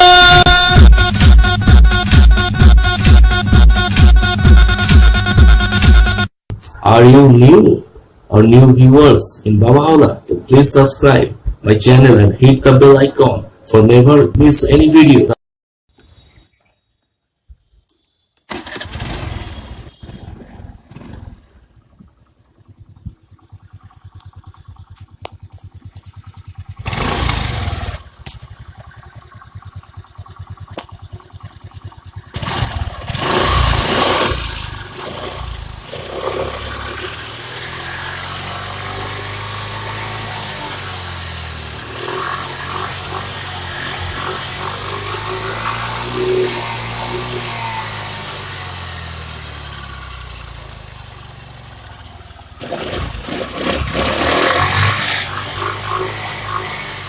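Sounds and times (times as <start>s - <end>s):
scooter engine revving: 18.5s - 57.0s.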